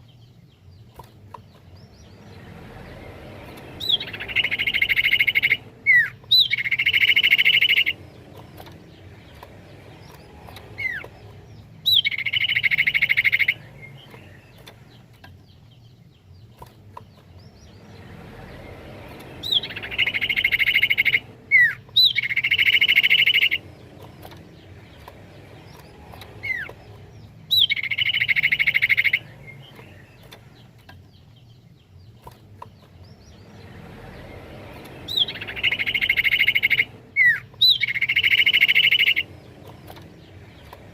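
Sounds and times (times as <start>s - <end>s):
bird whistled song: 1.7s - 16.5s, 17.4s - 32.2s, 33.0s - 40.9s
bird buzzy trill: 3.8s - 8.0s, 19.4s - 23.6s, 35.1s - 39.3s.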